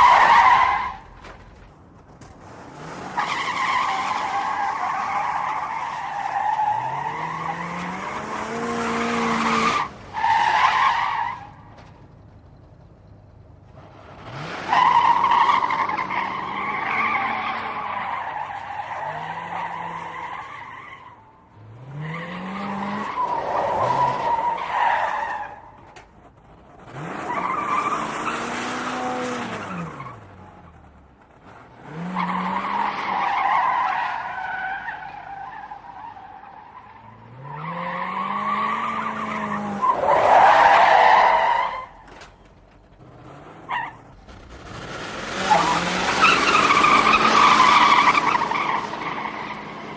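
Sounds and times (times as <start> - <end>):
tires squealing: 0.0 - 49.9
car engine revving: 6.6 - 10.4.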